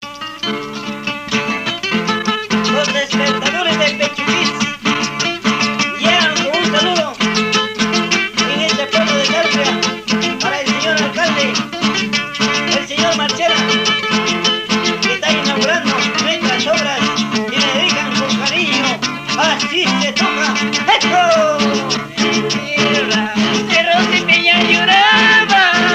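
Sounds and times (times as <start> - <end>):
folk band with plucked strings: 0.0 - 25.9.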